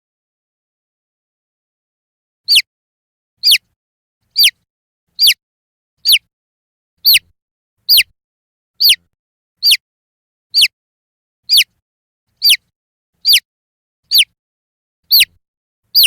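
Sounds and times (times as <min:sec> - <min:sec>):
baby chick peeping: 0:02.5 - 0:02.7, 0:03.4 - 0:03.7, 0:04.3 - 0:04.6, 0:05.2 - 0:05.4, 0:06.0 - 0:06.3, 0:07.0 - 0:08.1, 0:08.8 - 0:09.8, 0:10.5 - 0:10.8, 0:11.4 - 0:13.5, 0:14.1 - 0:14.4, 0:15.1 - 0:16.0.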